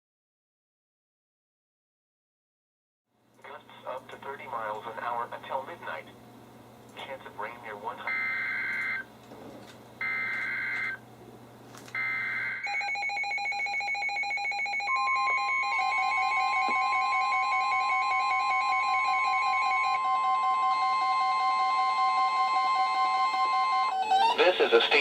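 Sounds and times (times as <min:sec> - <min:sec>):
steady alarm tone: 0:08.0 - 0:09.1, 0:10.0 - 0:11.0, 0:12.0 - 0:25.0
layered rhythmic alarm beeping: 0:12.0 - 0:25.0.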